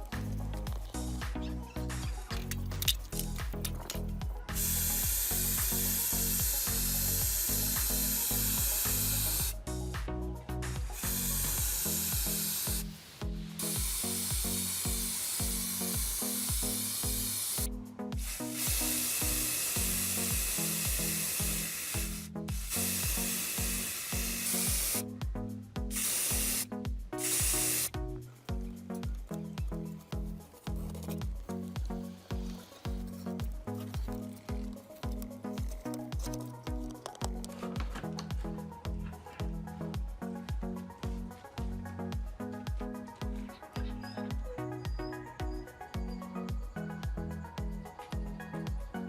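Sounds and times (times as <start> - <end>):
spray paint hissing: 0.0 - 25.2, 25.9 - 37.6
music with steady bass beat: 0.0 - 49.0.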